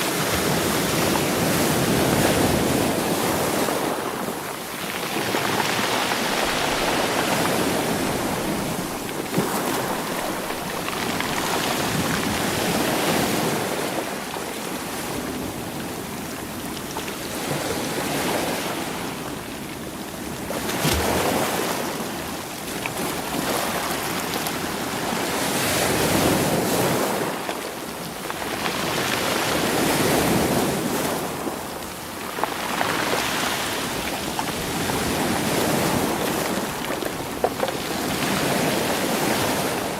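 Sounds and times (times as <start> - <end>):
waves washing over rocky shore: 0.0 - 39.9
stones knocking in surf: 4.9 - 14.0, 32.4 - 39.9.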